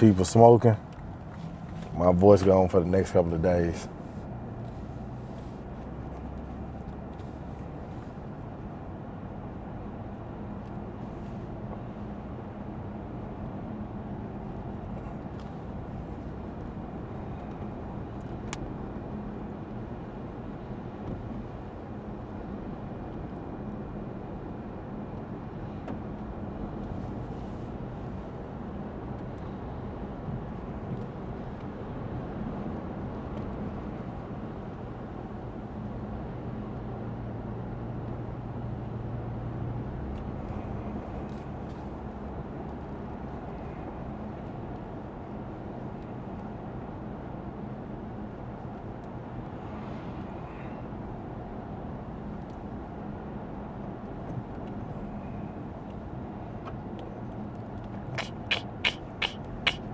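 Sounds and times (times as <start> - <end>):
tyre and road rumble: 0.0 - 8.4, 54.3 - 59.9
low engine hum: 0.0 - 59.9.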